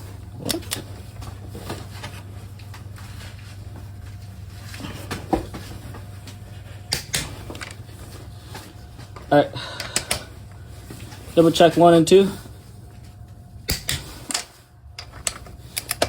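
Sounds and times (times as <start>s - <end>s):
steady low hum: 0.0s - 16.0s
torque wrench clicking: 15.0s - 16.0s.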